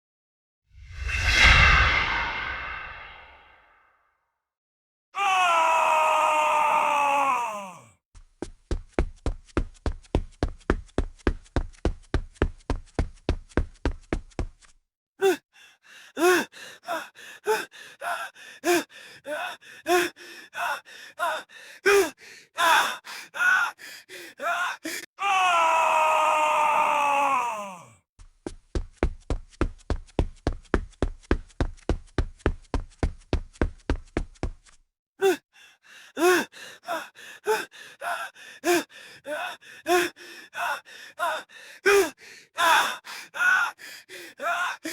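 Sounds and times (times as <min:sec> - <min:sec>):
man panting and gasping: 0:15.2 - 0:25.2, 0:35.2 - 0:44.9
man crying out: 0:35.2 - 0:35.4, 0:36.2 - 0:42.9.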